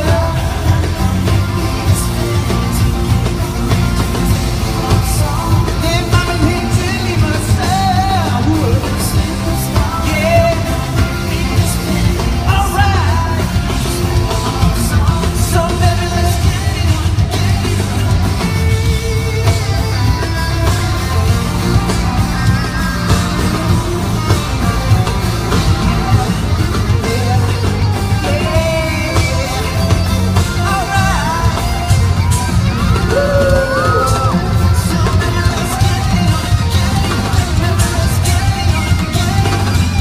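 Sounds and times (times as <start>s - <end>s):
loud live pop music: 0.0s - 40.0s
man singing: 0.0s - 40.0s.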